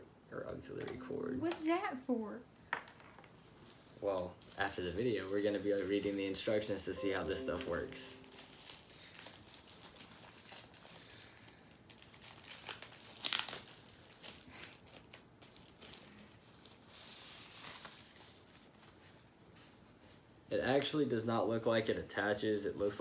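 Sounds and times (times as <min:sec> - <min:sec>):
packaging crinkling and rustling: 0:03.3 - 0:06.8, 0:07.6 - 0:19.3.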